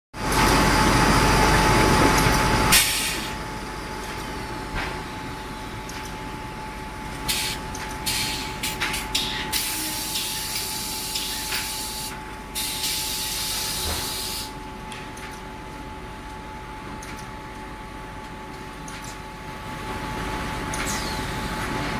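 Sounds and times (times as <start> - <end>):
machine hissing: 7.3 - 14.5.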